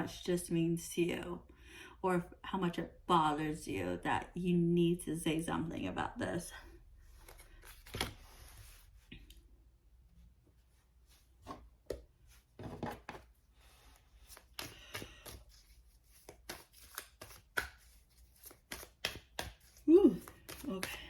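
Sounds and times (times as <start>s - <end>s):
cards being shuffled: 7.1s - 8.8s, 13.9s - 21.0s.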